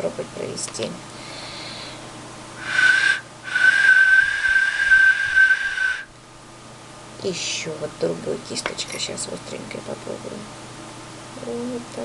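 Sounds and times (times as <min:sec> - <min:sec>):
clay whistle blowing: 0:02.6 - 0:06.1.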